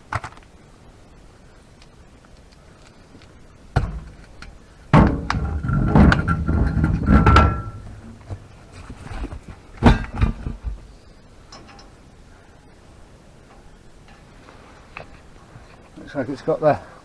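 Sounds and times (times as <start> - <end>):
heavy metal clanks and thuds: 3.7 - 11.9.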